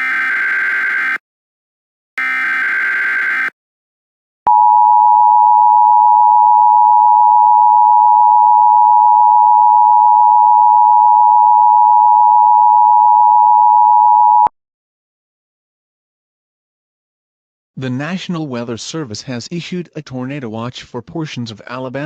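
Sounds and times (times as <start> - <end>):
screeching data bursts: 2.2 - 3.5.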